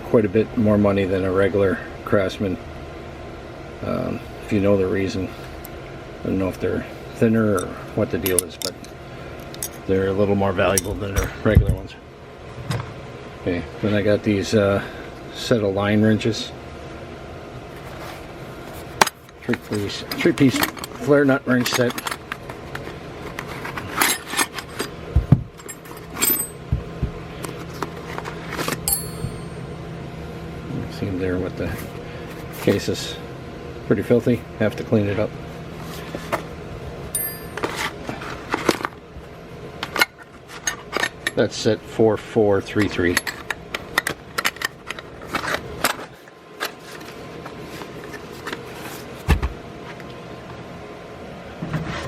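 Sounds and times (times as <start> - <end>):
metal wrenches clinking: 19.7 - 22.2, 23.9 - 24.9, 25.6 - 26.6, 28.8 - 29.7, 37.2 - 37.9
high metallic ring: 25.7 - 26.6, 28.8 - 29.9, 37.1 - 37.7.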